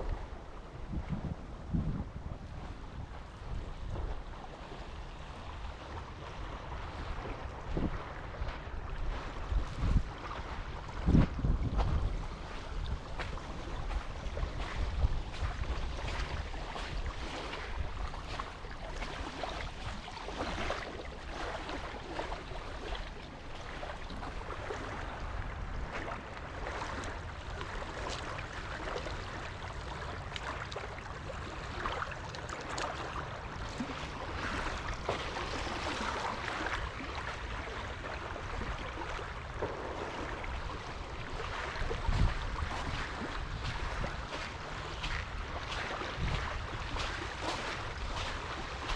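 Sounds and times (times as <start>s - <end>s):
wind rumbling on microphone: 0.0s - 48.9s.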